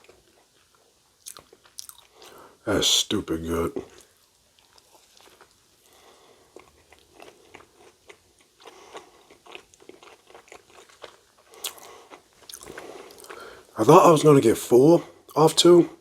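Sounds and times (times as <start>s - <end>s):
crunchy chewing: 0.0s - 2.4s, 3.9s - 13.7s.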